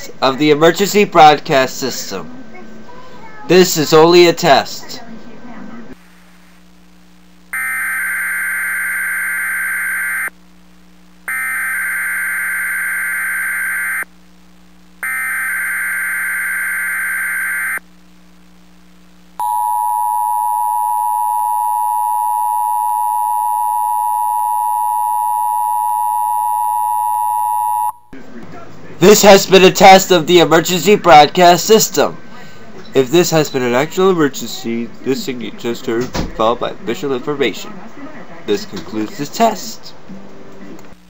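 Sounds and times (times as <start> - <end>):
buzzing digital data tone: 7.5 - 10.3, 11.3 - 14.1, 15.0 - 17.8.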